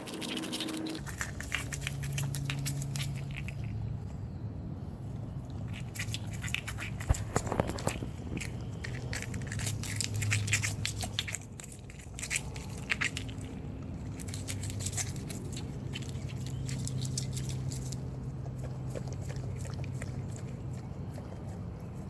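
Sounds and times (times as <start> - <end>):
dog crunching an egg: 0.0 - 4.1, 5.4 - 22.0
steady low hum: 0.0 - 22.0.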